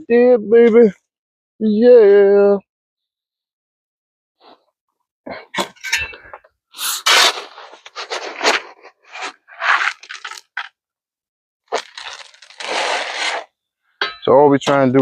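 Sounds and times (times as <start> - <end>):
concrete mix scraping and crunching: 6.1 - 10.7, 11.7 - 13.5.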